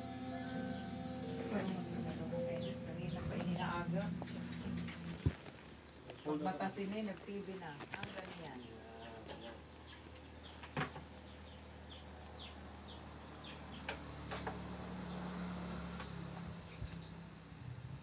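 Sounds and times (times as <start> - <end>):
steady low hum: 0.0 - 6.0.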